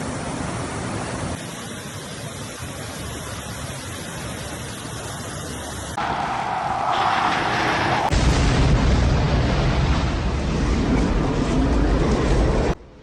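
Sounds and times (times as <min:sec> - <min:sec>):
water rushing: 0:00.0 - 0:08.3.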